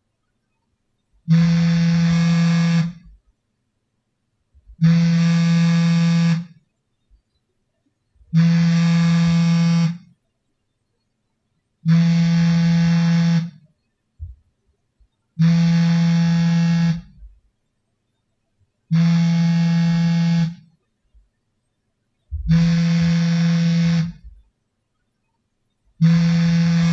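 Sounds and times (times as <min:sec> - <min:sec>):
phone vibration buzzing: 0:01.3 - 0:03.2, 0:04.8 - 0:06.6, 0:08.3 - 0:10.1, 0:11.8 - 0:13.6, 0:15.4 - 0:17.3, 0:18.9 - 0:20.7, 0:22.3 - 0:24.4, 0:26.0 - 0:26.9.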